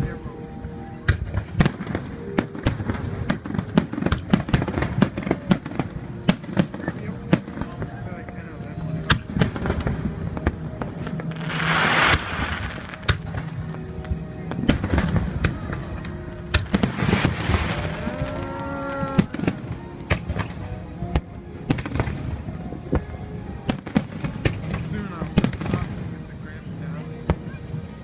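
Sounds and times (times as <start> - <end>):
fireworks bangs and crackles: 1.0 - 28.0
firework hissing rush: 11.3 - 13.1.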